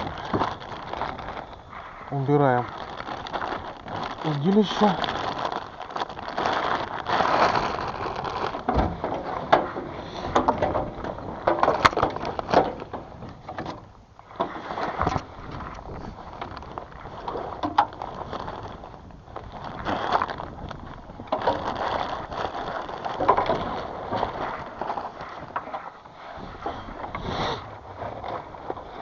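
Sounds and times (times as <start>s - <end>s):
rustling: 0.0s - 29.0s
fishing tackle knocking and clattering: 8.7s - 13.9s.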